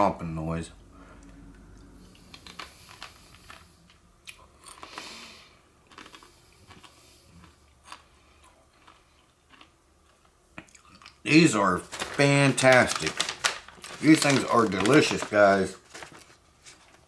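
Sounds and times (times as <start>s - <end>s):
person chewing crunchy snack: 2.2s - 11.2s.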